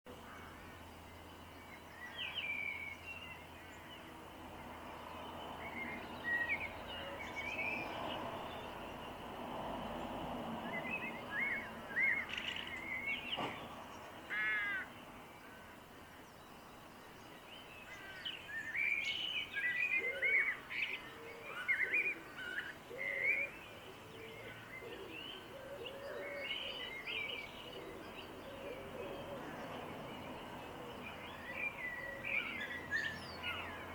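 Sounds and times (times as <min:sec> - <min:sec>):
small birds chirping and singing: 0:00.1 - 0:33.9
crows cawing: 0:14.3 - 0:14.9.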